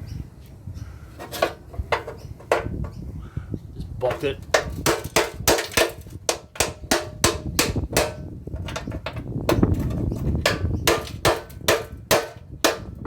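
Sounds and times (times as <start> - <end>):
hammer blows on metal: 4.1 - 13.0.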